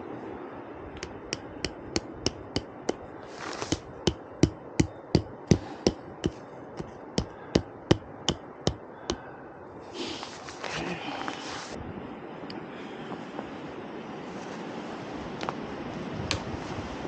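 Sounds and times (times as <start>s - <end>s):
hammer blows: 1.0s - 9.3s.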